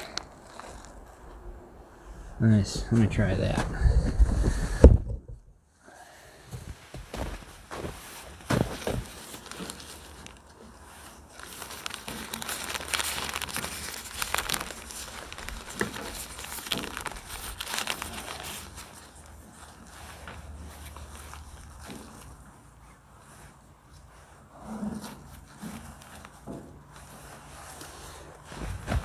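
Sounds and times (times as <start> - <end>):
tent fabric rustling: 6.5 - 29.0.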